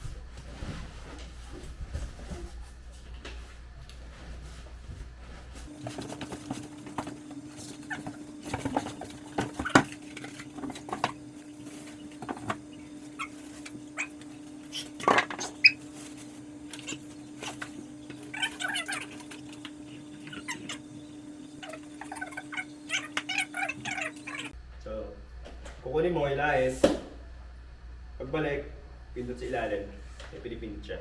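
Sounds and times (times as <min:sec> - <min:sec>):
steady hum: 0:00.0 - 0:31.0.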